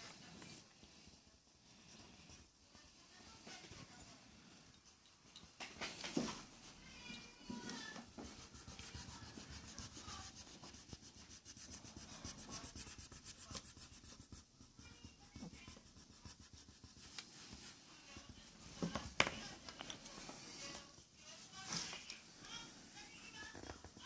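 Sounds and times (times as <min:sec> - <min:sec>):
drawing tool scratching paper: 0:07.8 - 0:19.5.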